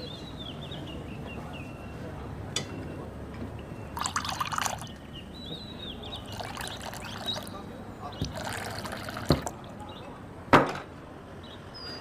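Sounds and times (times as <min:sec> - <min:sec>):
glass clink: 0:04.0 - 0:04.9
drink splashing into glass: 0:04.0 - 0:05.0, 0:06.3 - 0:07.6, 0:08.2 - 0:09.7.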